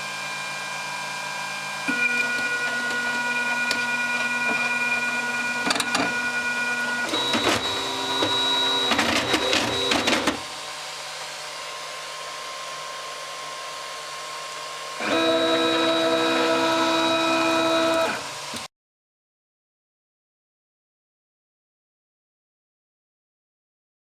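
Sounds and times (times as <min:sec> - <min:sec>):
printer stepper motors whining: 0:01.9 - 0:10.6, 0:15.0 - 0:18.6.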